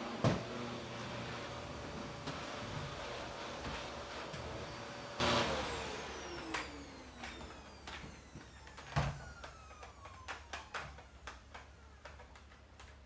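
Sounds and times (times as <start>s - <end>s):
vacuum cleaner motor spinning down: 0.0s - 12.6s.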